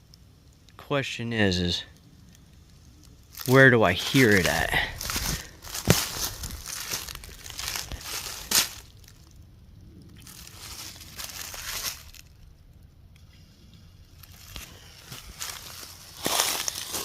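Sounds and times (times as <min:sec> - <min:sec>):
dry leaves and twigs crunching: 0:02.3 - 0:09.4, 0:10.1 - 0:12.7, 0:13.8 - 0:17.0
sharp twig crack: 0:05.0 - 0:09.2.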